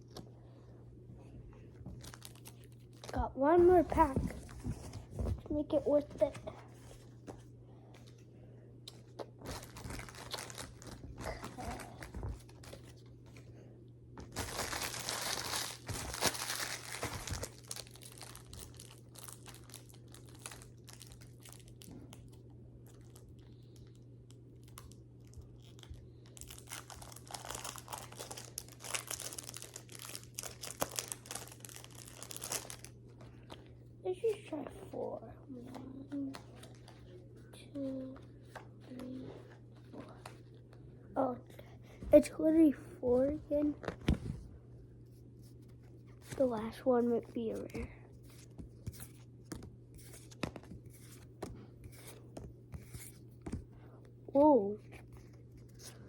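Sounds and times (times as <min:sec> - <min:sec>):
foil wrapper tearing and crinkling: 0:09.4 - 0:12.2, 0:14.3 - 0:21.9, 0:24.6 - 0:33.0.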